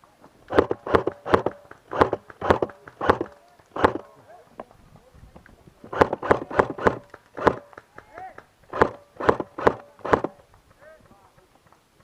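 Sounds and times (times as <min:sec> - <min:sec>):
airsoft gun shots: 0:00.5 - 0:04.1, 0:05.9 - 0:07.8, 0:08.7 - 0:10.4.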